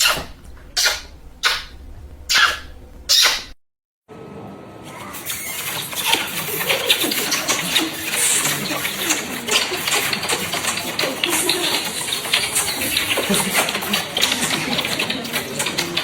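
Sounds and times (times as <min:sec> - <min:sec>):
wet kissing and lip-smacking: 0:00.0 - 0:03.5.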